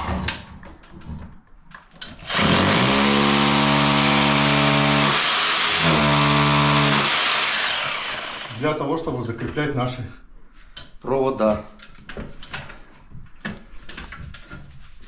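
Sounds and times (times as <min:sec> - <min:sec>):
hammer drill boring into wall: 0:02.1 - 0:08.7.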